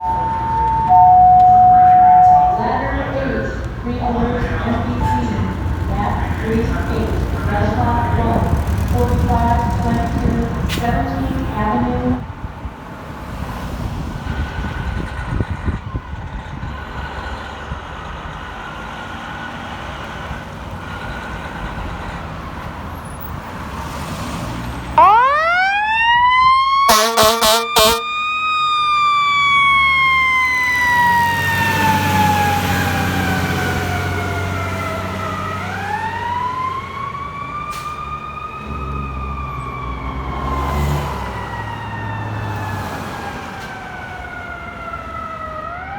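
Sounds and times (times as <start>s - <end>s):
siren wailing: 0.0s - 5.6s, 25.0s - 45.9s
fire truck engine rumbling: 0.0s - 45.9s
air horn blasts: 26.8s - 28.2s.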